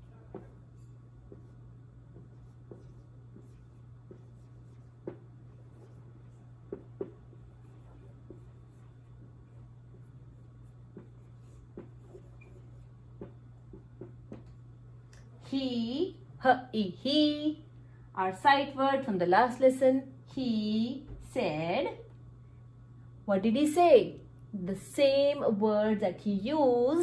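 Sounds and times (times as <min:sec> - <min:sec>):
steady low hum: 0:00.0 - 0:27.0
pen writing on paper: 0:00.3 - 0:12.9.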